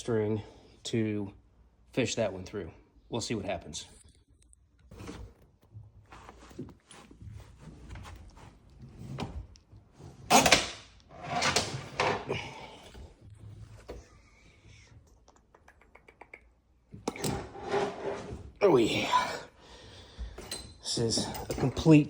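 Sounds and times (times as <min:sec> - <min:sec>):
scraping: 0:17.2 - 0:18.6.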